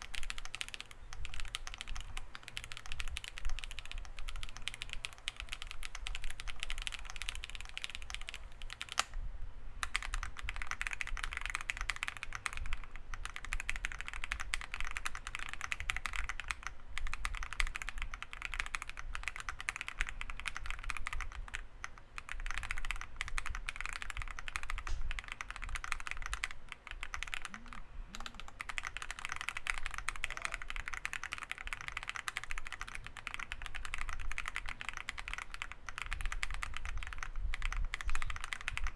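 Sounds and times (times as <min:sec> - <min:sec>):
mechanical keyboard typing: 0:00.0 - 0:09.2, 0:09.8 - 0:38.9.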